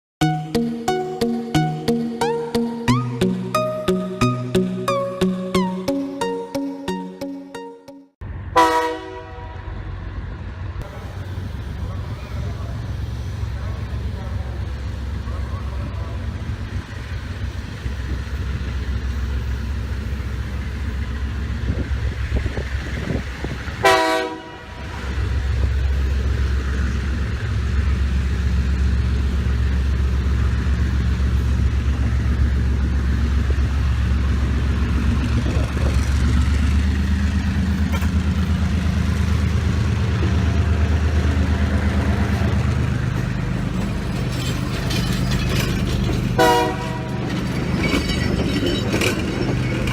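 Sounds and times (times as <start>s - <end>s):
diesel locomotive engine running: 8.2s - 49.9s
train horn blast: 8.5s - 9.9s, 23.8s - 25.0s, 46.4s - 47.3s.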